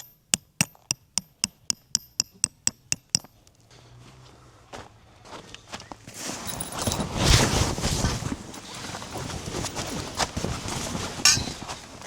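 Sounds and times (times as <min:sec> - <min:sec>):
knocking and rustling of handled things: 0:06.1 - 0:12.0.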